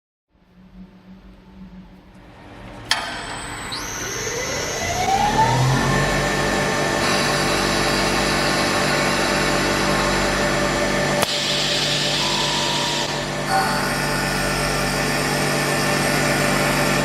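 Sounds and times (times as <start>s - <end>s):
sharp click: 2.9s - 3.9s, 11.2s - 12.4s
wood lathe whining: 2.9s - 17.0s
harsh hiss: 11.2s - 17.0s.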